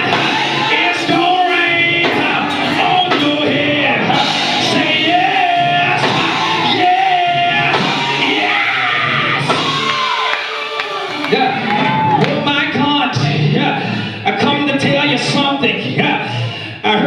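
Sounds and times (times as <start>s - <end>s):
gospel band playing: 0.0s - 12.9s.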